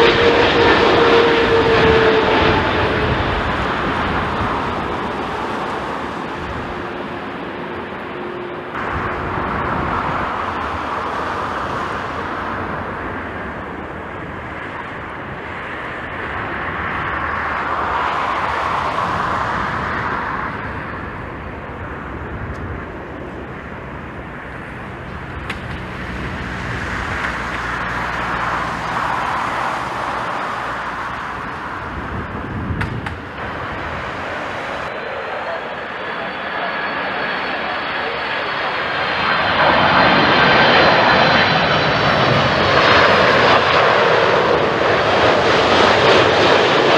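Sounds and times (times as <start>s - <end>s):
distant engine noise: 0.0s - 46.9s
strong gusty wind: 0.0s - 46.9s.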